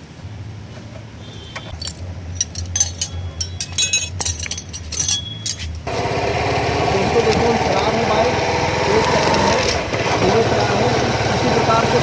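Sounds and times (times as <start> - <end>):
metal tools clinking: 1.7 - 5.9.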